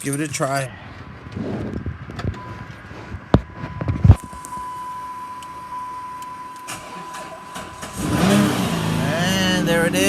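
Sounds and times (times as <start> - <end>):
steady high electronic tone: 2.4 - 10.0
car engine turning over: 5.8 - 10.0.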